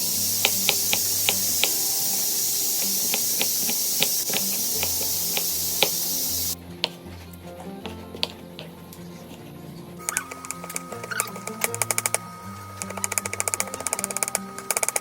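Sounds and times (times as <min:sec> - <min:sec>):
food hissing in a hot pan: 0:00.0 - 0:06.6.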